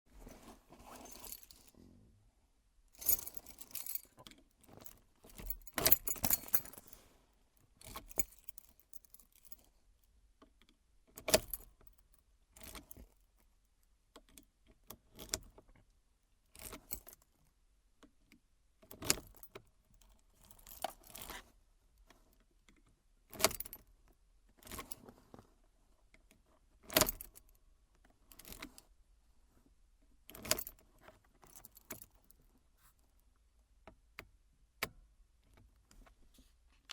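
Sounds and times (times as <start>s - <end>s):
keyring jangling: 0.9s - 1.7s, 3.0s - 7.0s, 7.8s - 9.6s.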